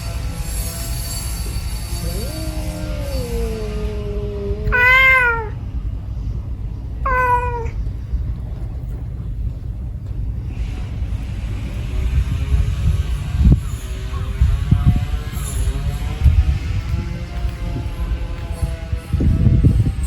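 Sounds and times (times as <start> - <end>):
low rumble: 1.4 - 19.9
cat yowling: 1.6 - 5.6, 7.0 - 7.8.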